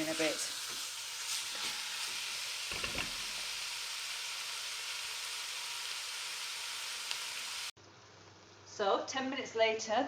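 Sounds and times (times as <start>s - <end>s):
food sizzling in a pan: 0.0s - 7.8s.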